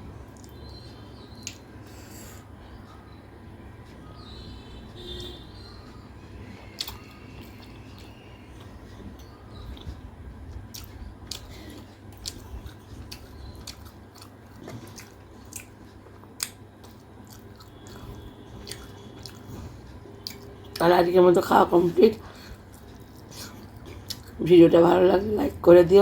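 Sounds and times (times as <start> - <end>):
wet chewing: 6.6 - 20.8, 22.2 - 24.4.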